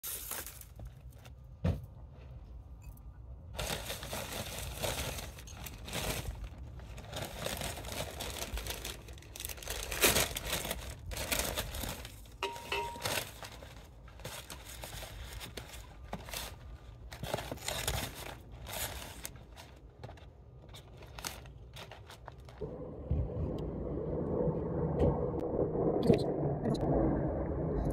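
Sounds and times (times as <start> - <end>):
paper packaging crinkling and tearing: 0.0 - 1.3, 3.6 - 22.6.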